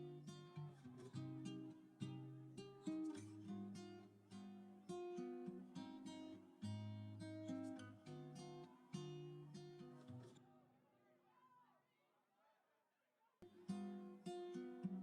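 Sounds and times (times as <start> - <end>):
acoustic guitar picking and strumming: 0.0 - 10.4, 13.5 - 15.0.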